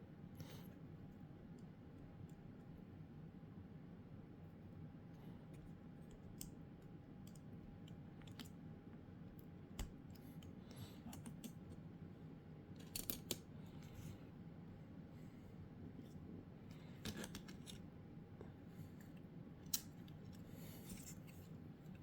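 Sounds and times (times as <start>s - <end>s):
small plastic parts clicking: 12.8s - 13.4s.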